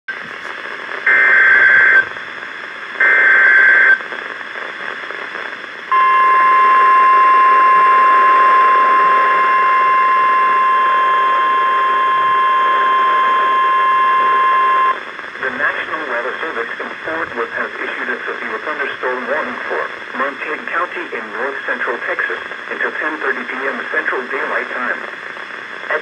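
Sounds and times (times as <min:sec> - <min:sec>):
radio hiss: 0:00.1 - 0:26.0
steady alarm tone: 0:05.9 - 0:15.0.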